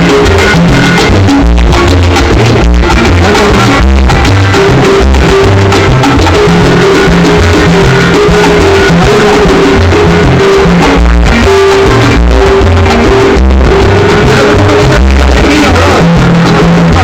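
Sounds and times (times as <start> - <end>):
loud instrumental salsa music: 0.0 - 17.0.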